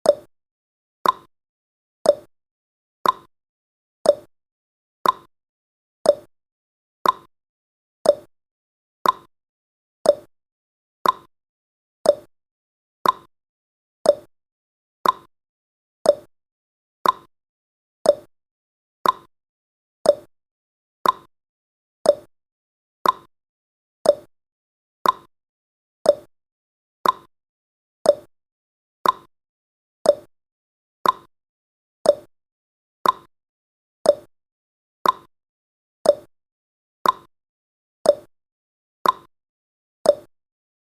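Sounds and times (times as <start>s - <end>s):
timer ticking: 0.0s - 0.3s, 1.0s - 1.3s, 2.0s - 2.3s, 3.0s - 3.3s, 4.0s - 4.3s, 5.0s - 5.3s, 6.0s - 6.3s, 7.0s - 7.3s, 8.0s - 8.3s, 9.0s - 9.3s, 10.0s - 10.3s, 11.0s - 11.3s, 12.0s - 12.3s, 13.0s - 13.3s, 14.0s - 14.3s, 15.0s - 15.3s, 16.0s - 16.3s, 17.0s - 17.3s, 18.0s - 18.3s, 19.0s - 19.3s, 20.0s - 20.3s, 21.0s - 21.3s, 22.0s - 22.3s, 23.0s - 23.3s, 24.0s - 24.3s, 25.0s - 25.3s, 26.0s - 26.3s, 27.0s - 27.3s, 28.0s - 28.3s, 29.0s - 29.3s, 30.0s - 30.3s, 31.0s - 31.3s, 32.0s - 32.3s, 33.0s - 33.3s, 34.0s - 34.3s, 35.0s - 35.3s, 36.0s - 36.3s, 37.0s - 37.3s, 38.0s - 38.3s, 39.0s - 39.3s, 40.1s - 40.3s.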